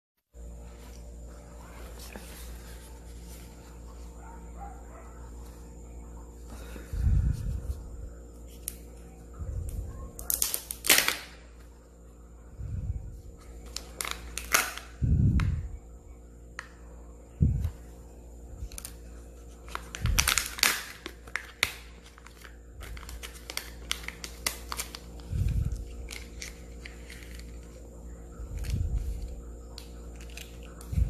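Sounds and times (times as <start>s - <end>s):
plastic wrapper crinkling and tearing: 10.2s - 11.4s, 13.3s - 15.0s, 18.6s - 31.0s.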